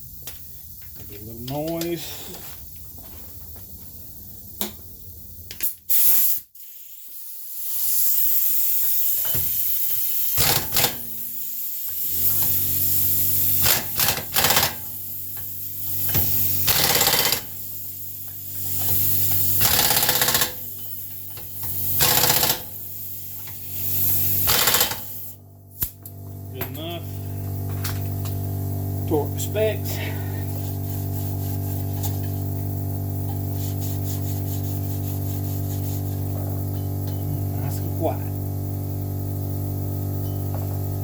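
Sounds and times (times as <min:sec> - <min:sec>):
hiss: 0:05.6 - 0:25.4, 0:33.5 - 0:36.4
impact wrench bursts: 0:05.9 - 0:25.4
low machine hum: 0:25.3 - 0:41.0.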